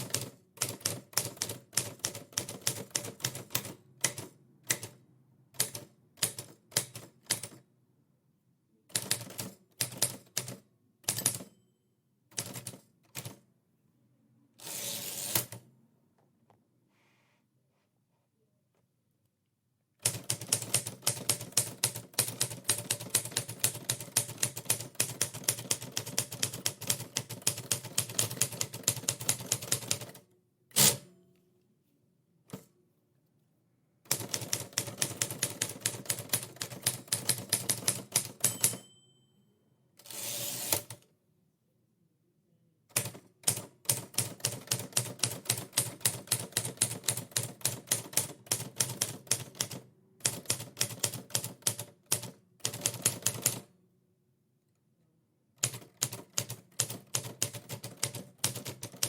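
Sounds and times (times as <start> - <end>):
typewriter keys clacking: 55.6 - 59.0.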